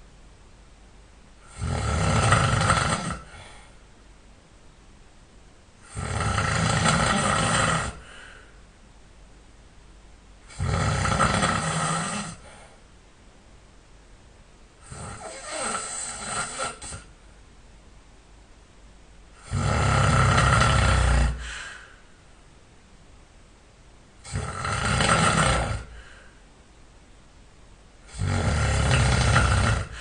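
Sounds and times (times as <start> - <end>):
man snoring loudly: 1.4 - 3.5, 5.8 - 8.1, 10.5 - 12.5, 14.8 - 17.1, 19.4 - 21.6, 24.2 - 26.0, 28.1 - 30.0.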